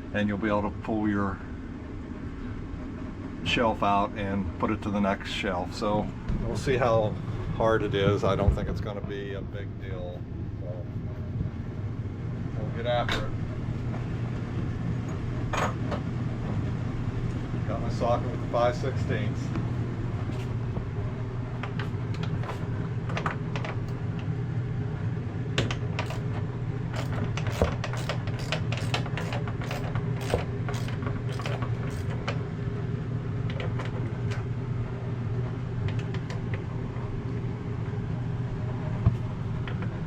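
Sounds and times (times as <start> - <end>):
low steady hum: 0.0 - 40.0
ratchet clicking: 26.0 - 26.3, 27.0 - 32.3.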